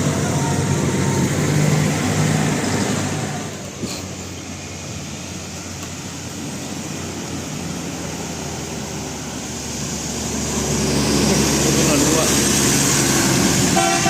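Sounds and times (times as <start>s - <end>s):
road traffic engine noise: 0.0s - 14.0s
vehicle approaching: 0.0s - 14.0s.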